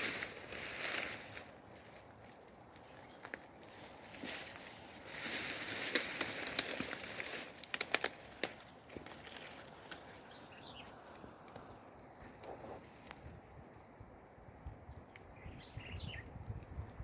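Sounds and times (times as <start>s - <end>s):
rustling and crackling: 0.0s - 10.2s.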